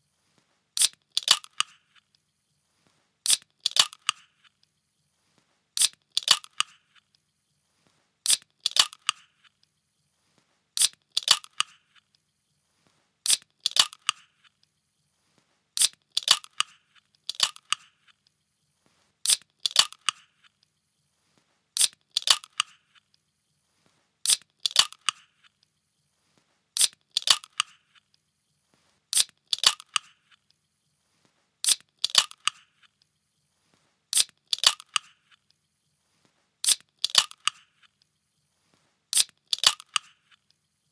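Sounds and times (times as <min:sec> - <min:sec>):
can opening click and hiss: 0:00.8 - 0:01.8, 0:03.3 - 0:04.5, 0:05.8 - 0:06.8, 0:08.3 - 0:09.3, 0:10.8 - 0:12.0, 0:13.3 - 0:14.3, 0:15.8 - 0:18.0, 0:19.3 - 0:20.3, 0:21.8 - 0:22.8, 0:24.3 - 0:25.3, 0:26.8 - 0:27.8, 0:29.1 - 0:30.2, 0:31.6 - 0:32.7, 0:34.2 - 0:35.2, 0:36.6 - 0:37.7, 0:39.2 - 0:40.2.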